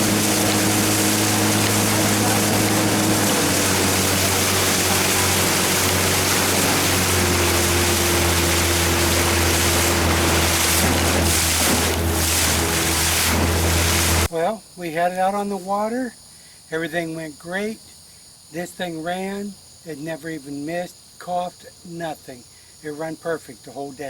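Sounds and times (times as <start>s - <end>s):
outboard motor running: 0.0s - 14.3s
rushing water: 0.0s - 14.3s
wind: 0.0s - 24.0s.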